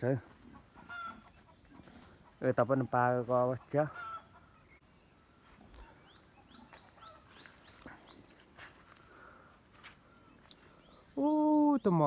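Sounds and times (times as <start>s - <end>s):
quiet open-air background: 0.0s - 12.0s
faint bird chirps: 4.0s - 12.0s.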